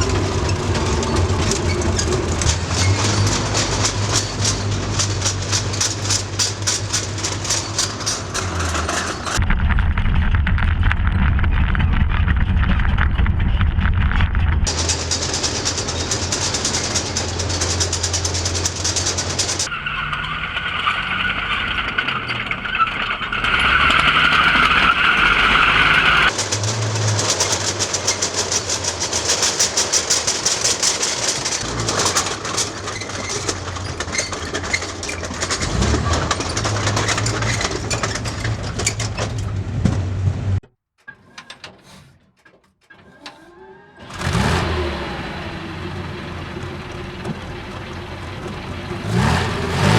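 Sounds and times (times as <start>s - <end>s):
steel tracks clattering: 0.0s - 9.4s, 14.7s - 19.7s, 26.3s - 42.3s
tank engine running: 0.0s - 40.6s, 43.1s - 49.9s
high squeal: 14.7s - 26.3s.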